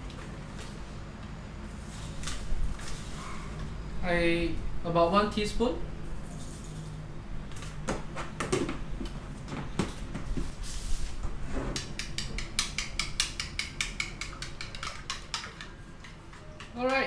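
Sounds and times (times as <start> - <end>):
utensil clinking against bowl: 11.8 - 17.0.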